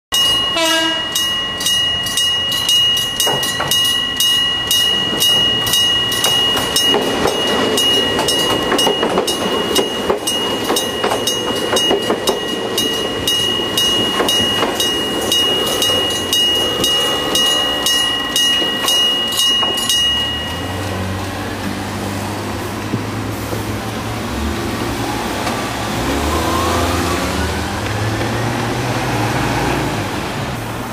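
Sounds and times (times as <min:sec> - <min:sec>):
level-crossing warning bell ringing: 0:00.1 - 0:21.7
train running over rails: 0:00.1 - 0:30.9.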